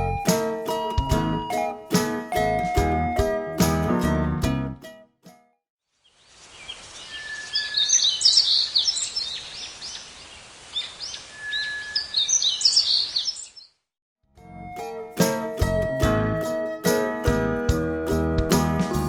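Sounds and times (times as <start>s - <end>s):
background hiss: 5.9s - 13.4s
recorded birdsong chirps and trills: 6.0s - 13.8s.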